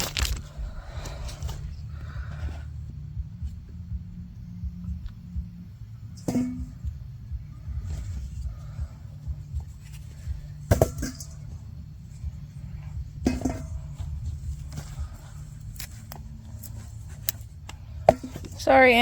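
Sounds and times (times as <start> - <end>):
low rumble: 0.0 - 19.0
soil and potatoes knocking: 7.8 - 11.6.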